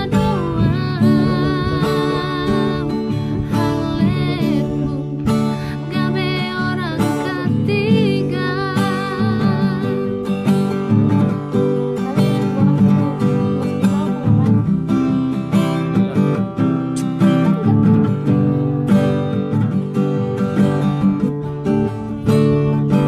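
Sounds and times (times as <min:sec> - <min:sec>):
woman singing with vibrato: 0:00.0 - 0:16.4
acoustic guitar strumming: 0:00.0 - 0:23.0.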